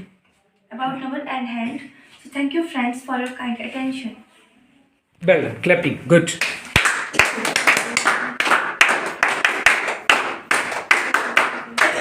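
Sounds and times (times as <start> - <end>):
group of people clapping: 6.3 - 12.0.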